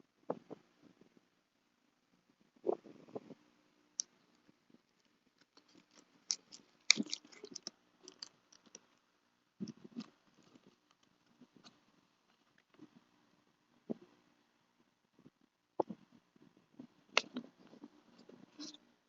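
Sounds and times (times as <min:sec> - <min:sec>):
packaging clicks and crinkles: 0:05.0 - 0:09.0.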